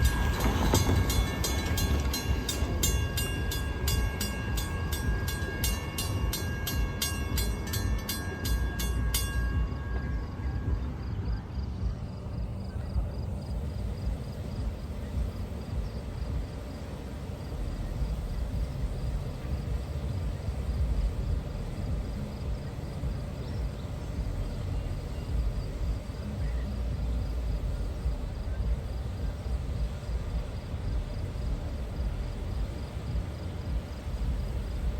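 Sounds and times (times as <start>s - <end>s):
crossing warning bell pinging: 0.0s - 11.5s
wind buffeting microphone: 0.0s - 34.9s.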